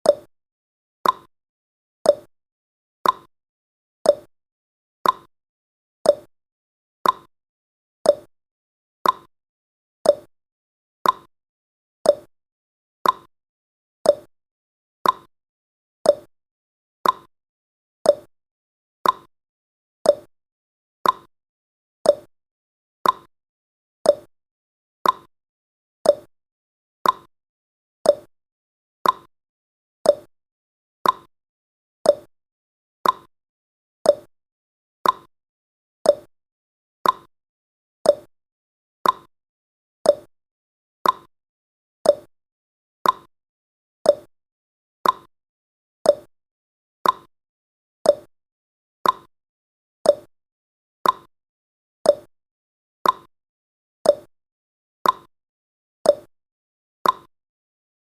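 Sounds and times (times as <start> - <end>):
timer ticking: 0.0 - 0.3, 1.0 - 1.3, 2.1 - 2.3, 3.0 - 3.3, 4.1 - 4.3, 5.0 - 5.3, 6.1 - 6.3, 7.0 - 7.3, 8.1 - 8.3, 9.0 - 9.3, 10.1 - 10.3, 11.0 - 11.3, 12.1 - 12.3, 13.0 - 13.3, 14.1 - 14.3, 15.0 - 15.3, 16.1 - 16.3, 17.0 - 17.3, 18.1 - 18.3, 19.0 - 19.3, 20.1 - 20.3, 21.0 - 21.3, 22.0 - 22.3, 23.0 - 23.3, 24.0 - 24.3, 25.0 - 25.3, 26.0 - 26.3, 27.0 - 27.3, 28.0 - 28.3, 29.0 - 29.3, 30.0 - 30.3, 31.0 - 31.3, 32.1 - 32.3, 33.0 - 33.3, 34.1 - 34.3, 35.0 - 35.3, 36.0 - 36.3, 37.0 - 37.3, 38.1 - 38.3, 39.0 - 39.3, 40.0 - 40.3, 41.0 - 41.3, 42.0 - 42.3, 43.0 - 43.3, 44.1 - 44.3, 45.0 - 45.3, 46.1 - 46.3, 47.0 - 47.3, 48.1 - 48.3, 49.0 - 49.3, 50.1 - 50.3, 51.0 - 51.3, 52.1 - 52.3, 53.0 - 53.3, 54.1 - 54.3, 55.0 - 55.3, 56.1 - 56.3, 57.0 - 57.3.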